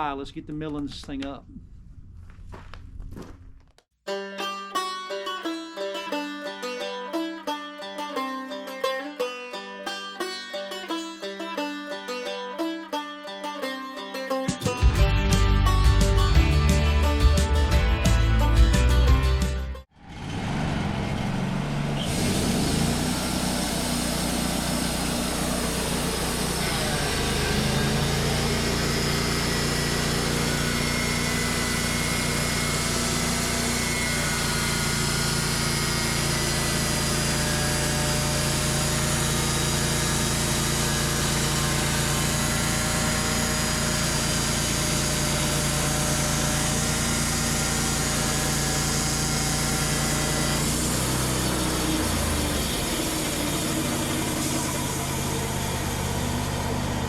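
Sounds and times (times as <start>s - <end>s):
band sawmill milling a log: 20.0s - 57.0s.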